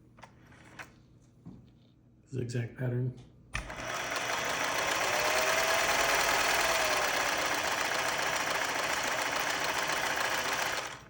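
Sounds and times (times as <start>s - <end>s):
sewing machine running: 3.6s - 11.0s.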